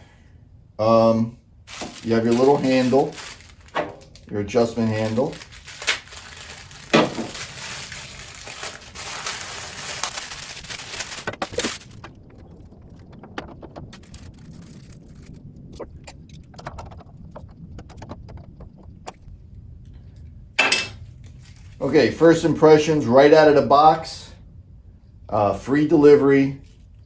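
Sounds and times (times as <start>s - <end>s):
packaging rustling: 1.7s - 12.2s, 13.8s - 15.4s.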